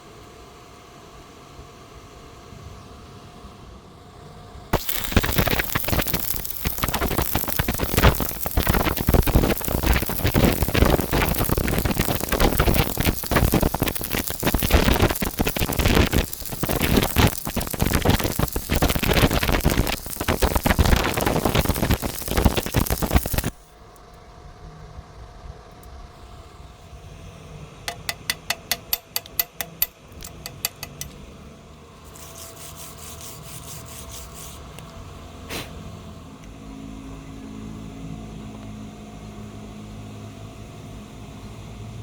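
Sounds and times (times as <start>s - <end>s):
arc welding crackling and sputtering: 4.8s - 23.8s, 32.0s - 34.6s.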